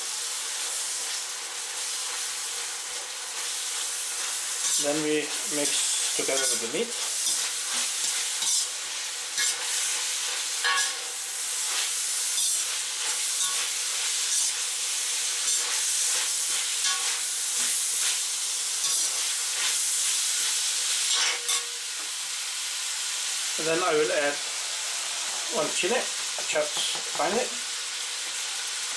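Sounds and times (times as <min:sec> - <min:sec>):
food sizzling in a wok: 0:00.0 - 0:28.9
utensil scraping and clacking on pan: 0:05.6 - 0:08.7, 0:09.4 - 0:09.8, 0:10.6 - 0:11.0, 0:13.4 - 0:13.7, 0:16.8 - 0:17.7, 0:18.8 - 0:19.2.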